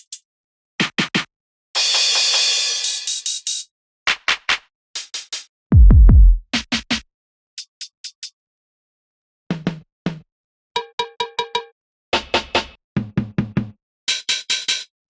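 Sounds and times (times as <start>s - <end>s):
deep bass boom: 5.8s - 6.4s
snappy drum hits: 5.8s - 6.4s.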